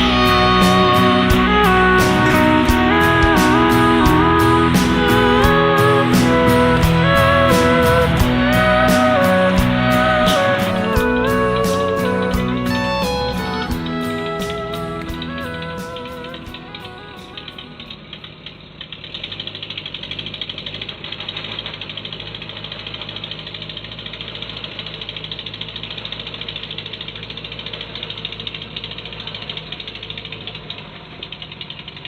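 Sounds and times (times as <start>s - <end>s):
harvester engine rattling: 0.0s - 32.0s.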